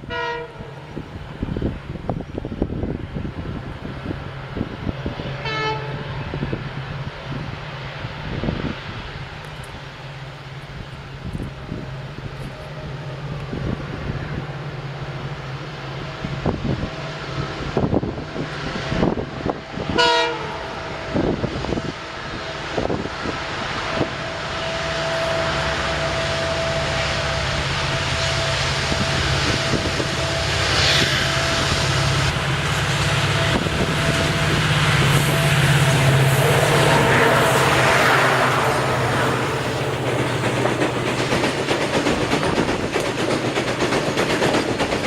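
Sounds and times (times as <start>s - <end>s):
train horn blast: 0.0s - 1.0s, 5.3s - 6.4s, 18.1s - 40.9s
diesel locomotives under load: 0.0s - 45.0s.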